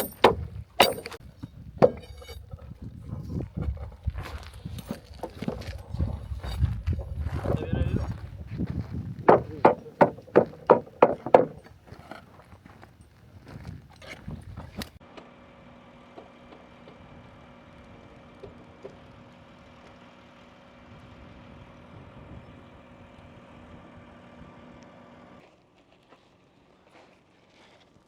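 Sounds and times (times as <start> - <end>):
knocks: 0.0 - 1.2, 1.8 - 2.4, 9.2 - 11.7
heavy machine engine humming: 14.2 - 25.4.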